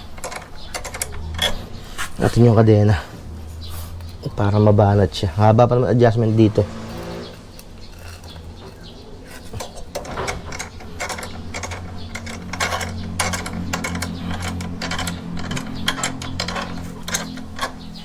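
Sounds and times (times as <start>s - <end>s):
steady low hum: 0.0s - 18.0s
wrench clicking and ratcheting: 9.5s - 18.0s.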